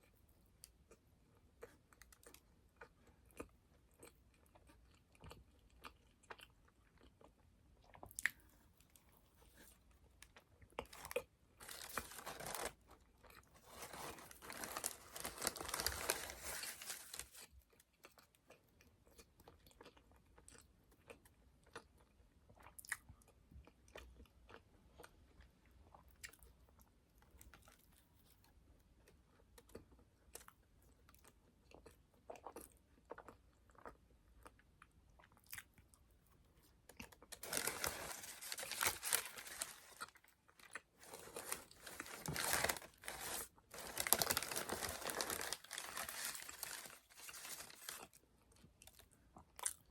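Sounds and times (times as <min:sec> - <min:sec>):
person chewing food: 0:00.0 - 0:16.2, 0:17.0 - 0:49.9.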